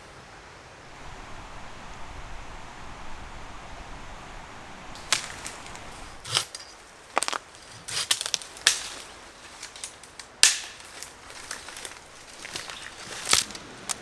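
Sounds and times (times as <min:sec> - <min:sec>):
sharp cracks and knocks: 0:05.0 - 0:14.0.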